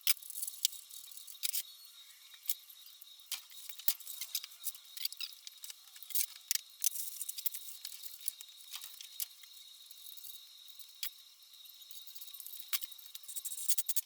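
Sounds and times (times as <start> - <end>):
faint high whine: 0.9 - 5.5.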